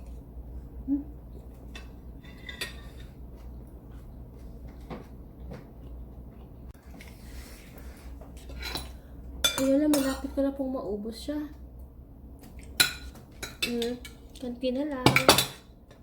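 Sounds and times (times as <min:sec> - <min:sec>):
low steady hum: 0:00.0 - 0:16.0
cutlery clinking against a plate: 0:01.6 - 0:03.2.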